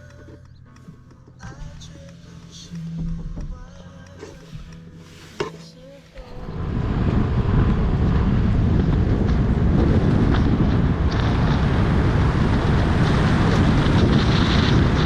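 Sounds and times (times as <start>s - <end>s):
wind buffeting microphone: 6.4s - 15.0s.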